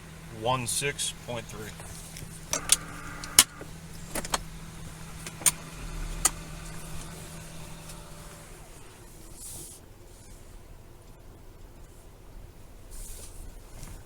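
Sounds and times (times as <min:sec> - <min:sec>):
steady engine hum: 0:00.0 - 0:14.0
sharp clicks and knocks: 0:02.1 - 0:04.5.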